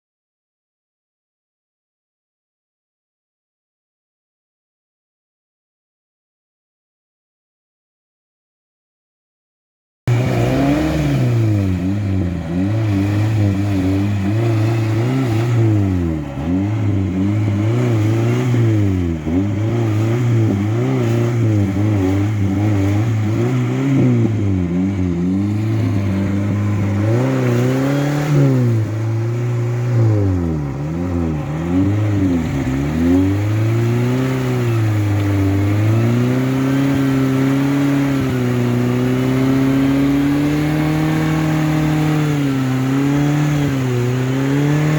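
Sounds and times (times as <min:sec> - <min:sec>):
car engine revving: 0:10.1 - 0:44.9.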